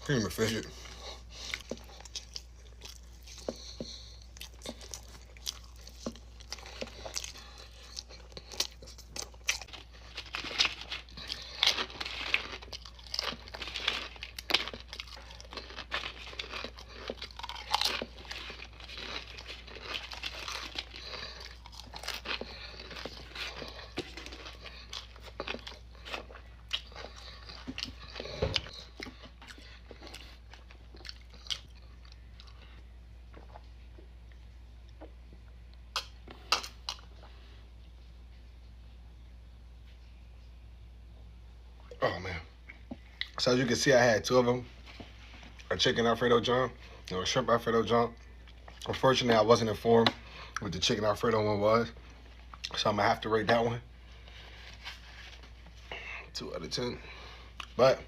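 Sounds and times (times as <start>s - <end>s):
steady low hum: 0.0s - 58.0s
crunchy chewing: 0.8s - 35.1s.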